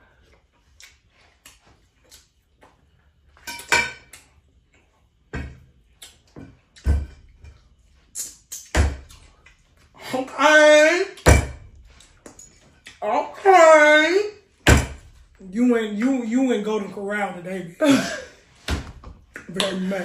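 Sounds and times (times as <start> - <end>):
cutlery clatter: 3.4 - 4.2.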